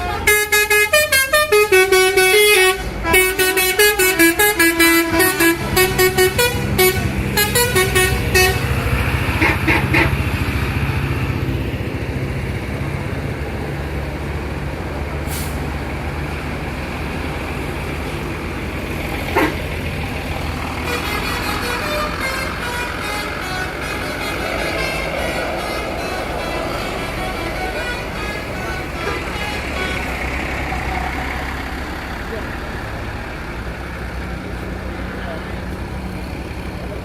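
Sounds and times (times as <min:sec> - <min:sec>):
bus musical horn tune: 0:00.0 - 0:10.5, 0:19.2 - 0:19.9, 0:20.5 - 0:31.1
bus diesel engine running: 0:00.0 - 0:37.0.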